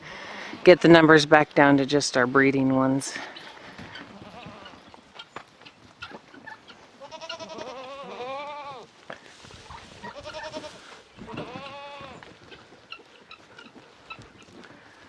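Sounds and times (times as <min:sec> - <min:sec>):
goats bleating: 0:03.3 - 0:05.0, 0:07.0 - 0:08.9, 0:10.0 - 0:12.6.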